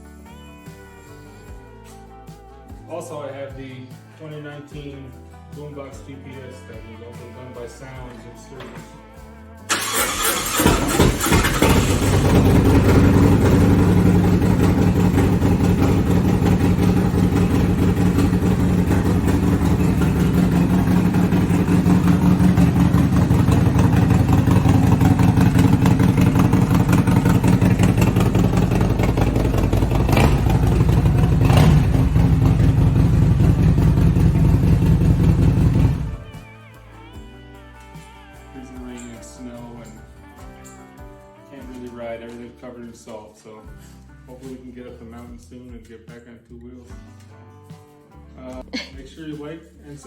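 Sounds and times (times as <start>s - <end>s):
short sharp engine sounds: 9.7s - 32.9s
motorcycle engine idling: 9.7s - 36.3s
motorcycle engine starting: 9.7s - 36.4s.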